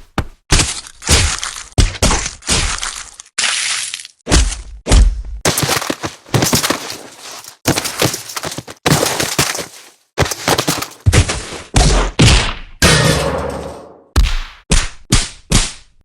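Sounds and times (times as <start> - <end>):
punch sound effects: 11.1 - 15.3.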